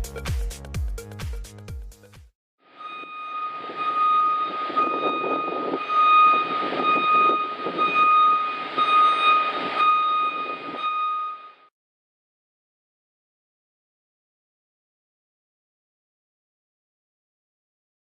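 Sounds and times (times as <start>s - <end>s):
machinery whining and rumbling: 2.7s - 11.5s.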